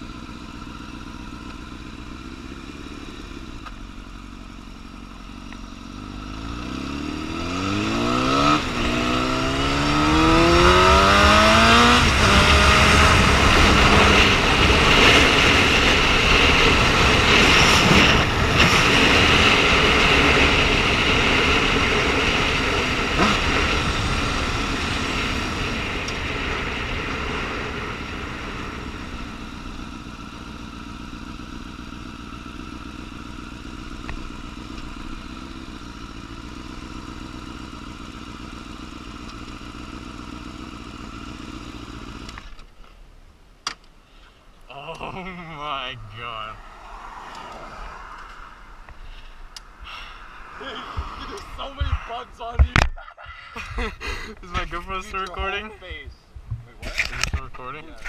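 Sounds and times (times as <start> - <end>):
motorcycle engine accelerating: 0.0 - 42.7, 44.7 - 53.0
rush of wind at speed: 10.2 - 29.6, 46.0 - 52.9.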